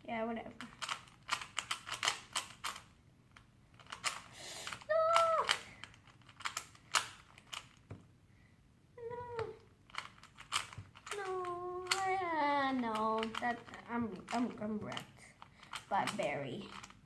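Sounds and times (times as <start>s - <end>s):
puzzle cube layers clicking: 0.6s - 2.9s, 3.7s - 8.0s, 9.2s - 17.0s.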